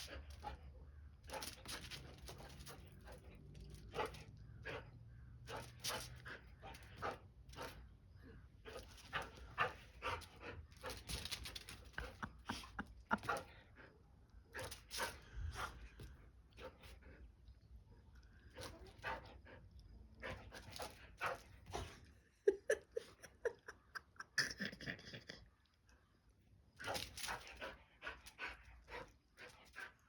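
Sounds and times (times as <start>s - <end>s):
dogs playing: 0.0s - 7.9s, 8.6s - 17.5s, 18.4s - 22.2s, 26.8s - 30.0s.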